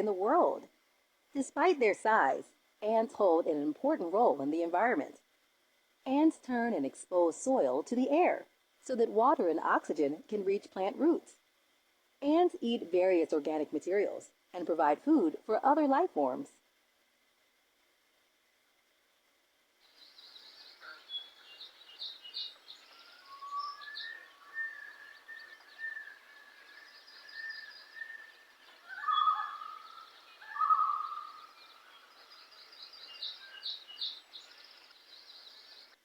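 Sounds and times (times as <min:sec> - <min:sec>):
bird trills and chirps: 0:19.9 - 0:36.0
lower whistled bird calls: 0:19.9 - 0:36.0
loud warbling bird calls: 0:20.0 - 0:35.9.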